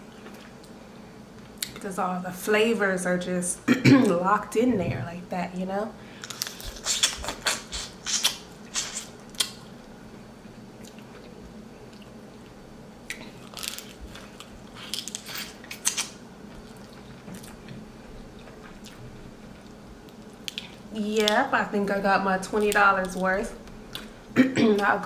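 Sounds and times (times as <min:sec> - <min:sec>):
wet chewing and smacking: 0:10.8 - 0:20.9.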